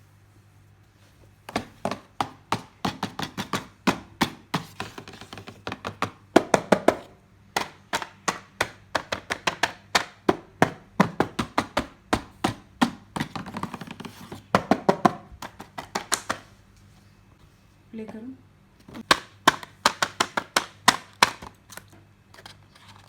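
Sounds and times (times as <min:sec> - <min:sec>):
toy pieces clicking and tapping: 0:19.0 - 0:21.5.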